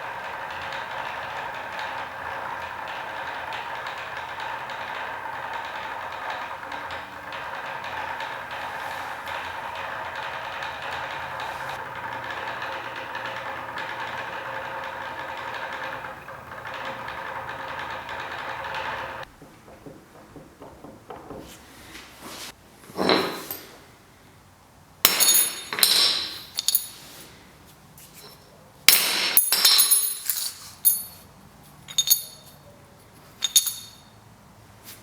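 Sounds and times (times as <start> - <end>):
hard objects clinking and knocking: 17.8 - 23.8, 25.1 - 27.2, 28.1 - 32.7, 33.3 - 34.1.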